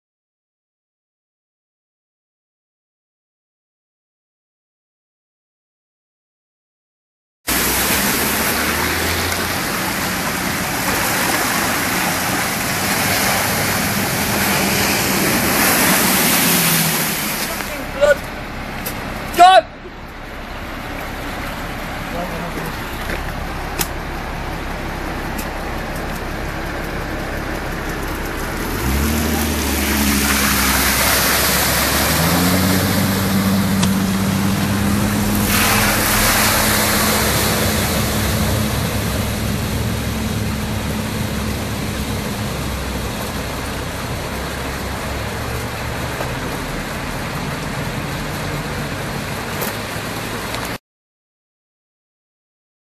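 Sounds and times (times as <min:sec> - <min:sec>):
heavy water splash: 0:07.5 - 0:18.2, 0:27.9 - 0:50.5
car engine pulling: 0:07.5 - 0:50.8
rush of water: 0:07.5 - 0:50.8.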